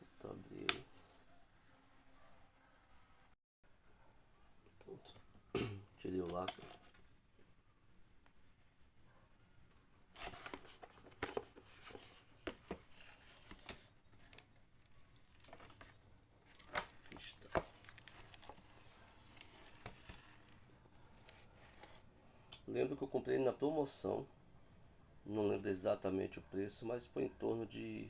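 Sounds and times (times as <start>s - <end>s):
clicks and knocks of handling: 6.2s - 7.1s, 9.7s - 18.7s
packaging rustling and crinkling: 10.1s - 22.0s.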